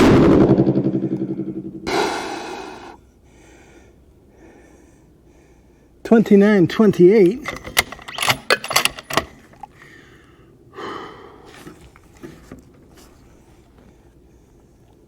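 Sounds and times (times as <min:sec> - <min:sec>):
breath out: 0:01.9 - 0:05.1, 0:09.7 - 0:12.0
rifle bolt clicks and clacks: 0:07.4 - 0:09.7.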